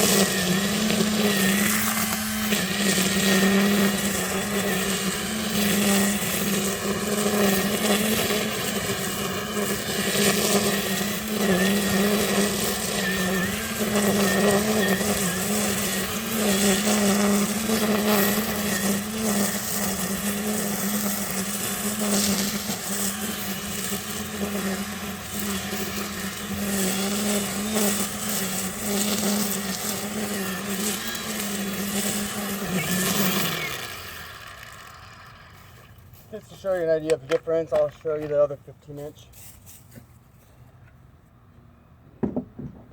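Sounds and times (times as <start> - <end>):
string trimmer motor whining: 0.0 - 42.9
trimmer line cutting grass: 0.0 - 42.9.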